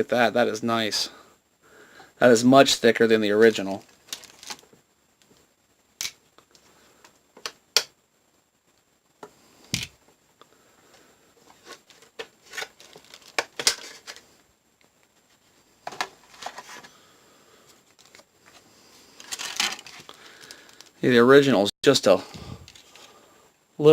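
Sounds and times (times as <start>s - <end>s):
rustling: 3.6s - 5.6s, 10.8s - 21.0s.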